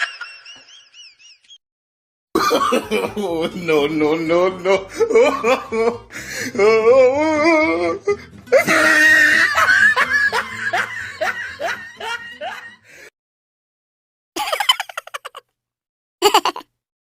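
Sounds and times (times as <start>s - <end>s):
comedy laughter: 0.0s - 1.6s, 2.4s - 3.5s, 4.6s - 6.1s, 8.5s - 12.9s, 14.4s - 15.5s, 16.2s - 16.7s.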